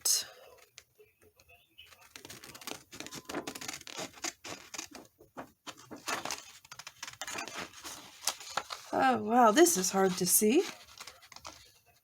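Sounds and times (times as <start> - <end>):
scissors cutting paper: 2.0 - 5.1, 5.8 - 11.8.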